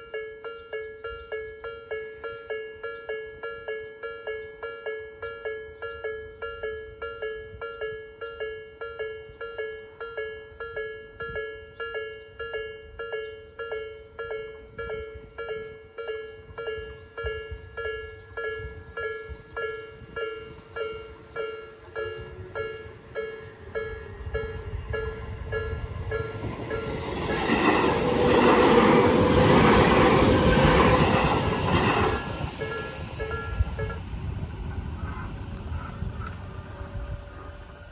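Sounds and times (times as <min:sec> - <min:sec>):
level crossing warning bell: 0:00.0 - 0:34.4.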